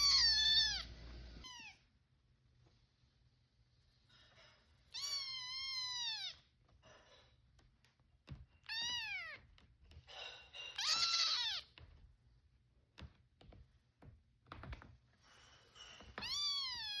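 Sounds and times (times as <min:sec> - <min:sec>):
kittens meowing: 0:00.0 - 0:01.8, 0:10.8 - 0:11.8.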